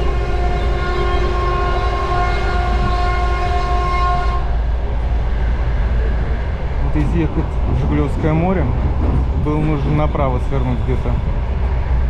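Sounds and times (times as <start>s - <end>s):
locomotive horn: 0.0s - 4.6s
train rumbling: 0.0s - 12.0s.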